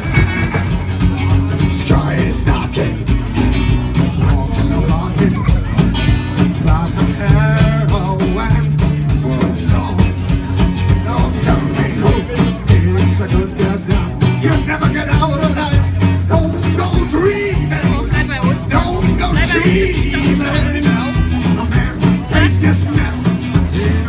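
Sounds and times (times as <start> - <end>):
bass line: 0.0 - 24.0
live band playing country blues: 0.0 - 24.0
steady drumbeat: 0.0 - 24.0.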